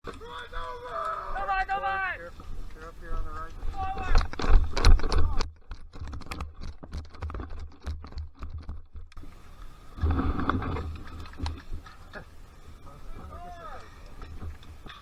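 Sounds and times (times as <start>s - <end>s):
rustling: 0.0s - 15.0s
sharp irregular clicks: 0.1s - 15.0s.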